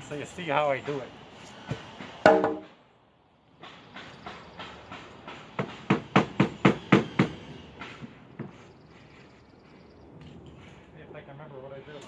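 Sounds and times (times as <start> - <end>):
short sharp knocks: 1.7 - 2.8.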